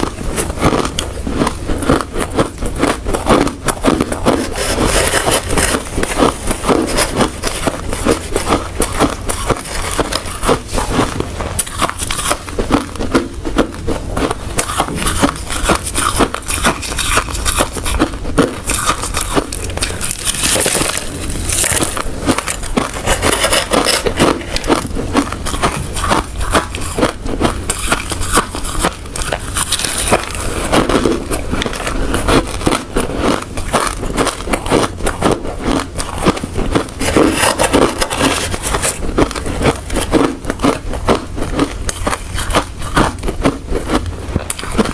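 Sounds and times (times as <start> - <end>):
person crunching ice: 0.0 - 44.9.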